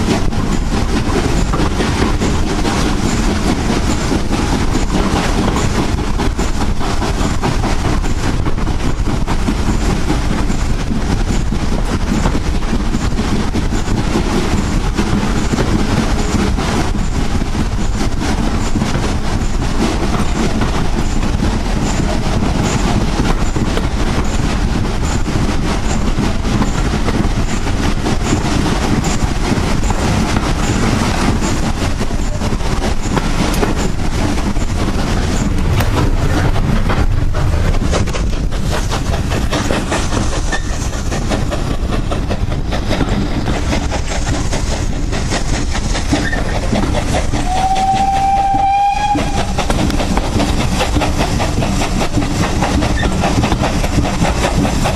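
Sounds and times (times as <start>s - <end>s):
steam locomotive working hard: 0.0s - 54.9s.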